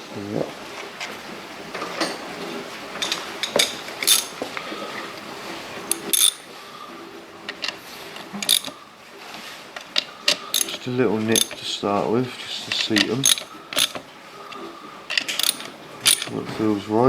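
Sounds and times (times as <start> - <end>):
ratchet wrench clicking: 5.9 - 6.5, 7.5 - 8.7, 9.8 - 11.6, 12.7 - 14.0, 15.1 - 16.4.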